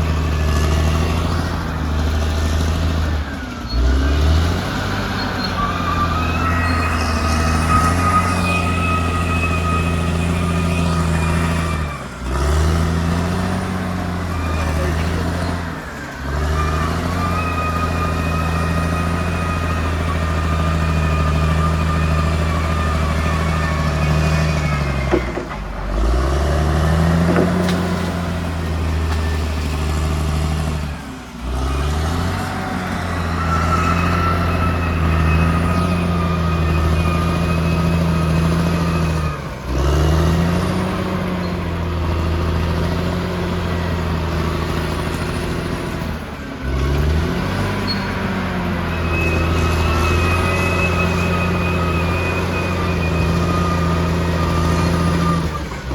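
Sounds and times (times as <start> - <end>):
bulldozer diesel engine under load: 0.0 - 55.9
high whine: 5.3 - 11.4.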